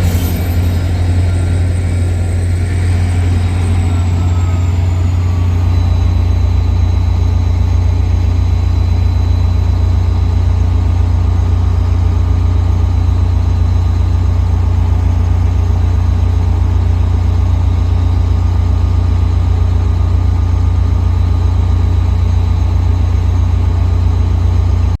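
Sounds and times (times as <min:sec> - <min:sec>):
faint whines: 0:00.0 - 0:09.6
idling train low drone: 0:00.0 - 0:25.0.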